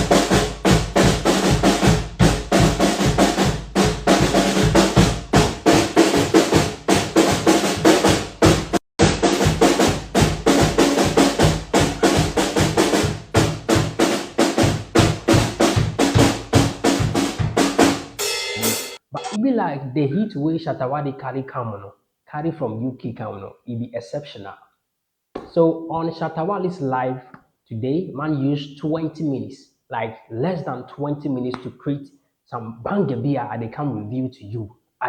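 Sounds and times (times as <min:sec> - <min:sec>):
drum kit played fast: 0:00.0 - 0:19.4.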